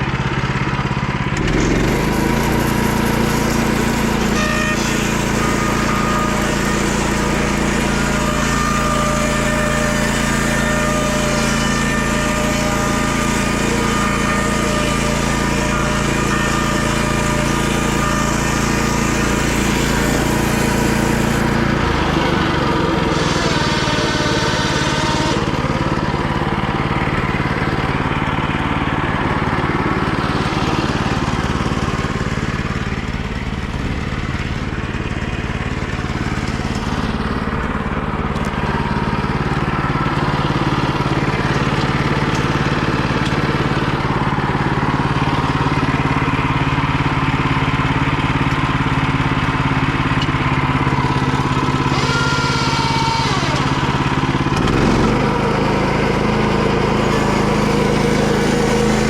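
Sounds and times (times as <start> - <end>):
small gasoline engine running: 0.0 - 59.0.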